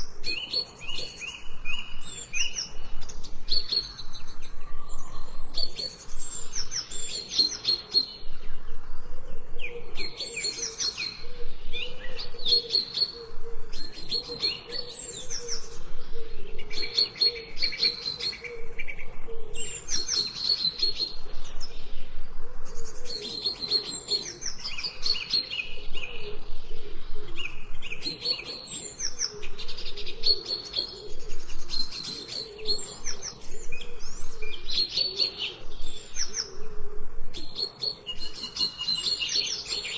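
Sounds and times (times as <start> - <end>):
songbirds chirping and singing: 0.0 - 39.9.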